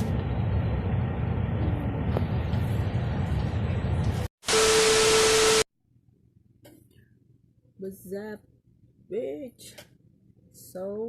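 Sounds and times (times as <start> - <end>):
vehicle road noise: 0.0 - 4.3.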